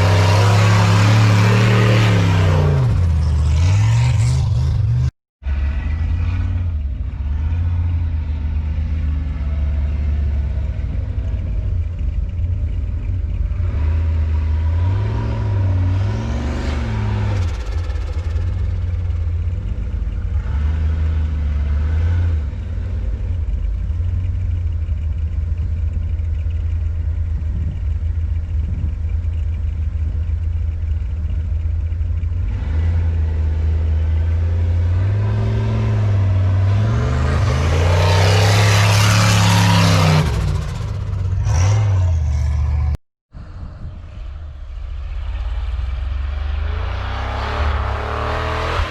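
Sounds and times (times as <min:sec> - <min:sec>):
truck engine revving: 0:00.0 - 0:10.4, 0:32.4 - 0:43.0, 0:44.5 - 0:48.9.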